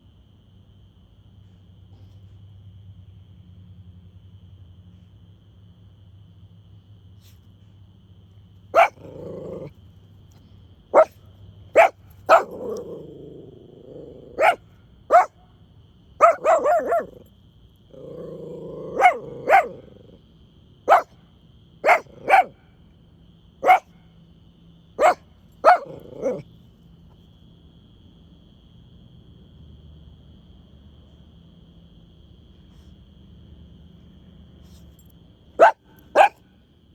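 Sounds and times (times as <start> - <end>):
faint insect chirr: 0.0 - 36.9
puppy barking: 8.7 - 9.7, 10.9 - 11.2, 11.8 - 15.4, 16.2 - 17.3, 18.0 - 20.2, 20.9 - 21.2, 21.8 - 22.6, 23.6 - 23.9, 25.0 - 26.4, 35.6 - 36.4
puppy growling: 8.8 - 9.8, 11.8 - 15.3, 16.2 - 17.3, 17.9 - 20.2, 25.0 - 26.5, 35.6 - 36.3.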